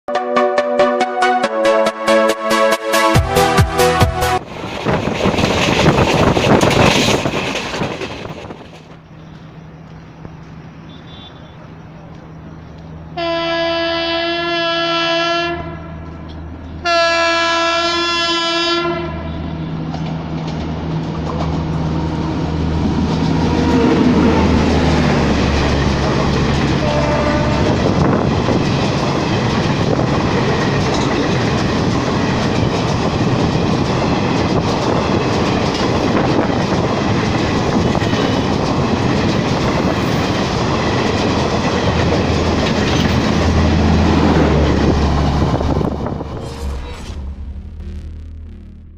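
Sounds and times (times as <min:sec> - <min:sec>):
train wheels clattering on rails: 0:04.5 - 0:10.6, 0:19.8 - 0:21.9, 0:24.4 - 0:46.2
locomotive horn blasts: 0:10.9 - 0:11.6, 0:13.2 - 0:16.1, 0:16.8 - 0:19.7, 0:26.7 - 0:27.9.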